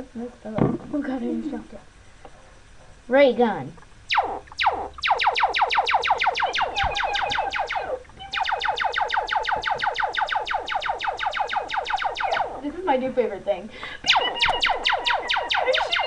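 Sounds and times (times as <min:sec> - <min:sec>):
ray gun zaps: 0:04.1 - 0:12.7, 0:14.1 - 0:16.0.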